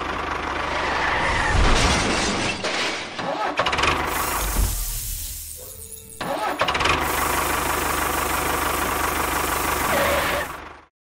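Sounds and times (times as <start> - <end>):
small motor running: 6.2 - 10.6.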